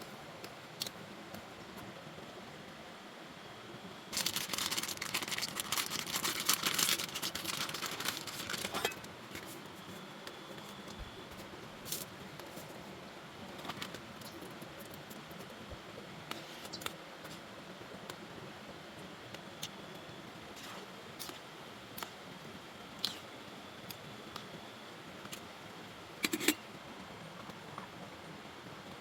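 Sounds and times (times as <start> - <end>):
dense crinkling and rustling: 4.1 - 12.9.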